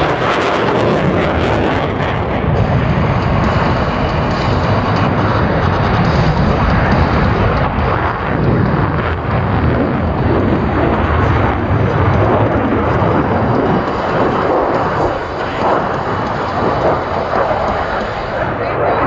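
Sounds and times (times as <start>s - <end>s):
jet engines roaring: 0.0s - 19.0s.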